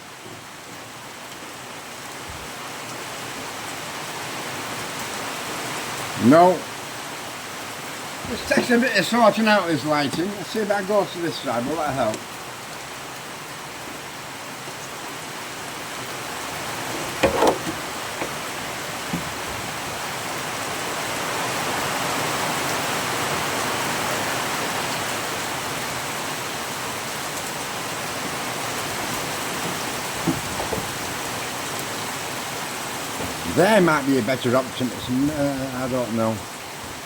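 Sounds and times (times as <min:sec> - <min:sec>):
heavy rain hiss: 0:00.0 - 0:37.0
short knocks and clanks: 0:16.8 - 0:20.0, 0:29.6 - 0:31.1.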